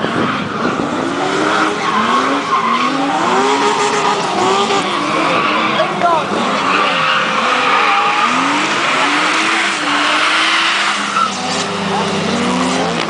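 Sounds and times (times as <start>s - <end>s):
car engine revving: 0.0s - 13.0s
tyre squeal: 1.7s - 12.2s.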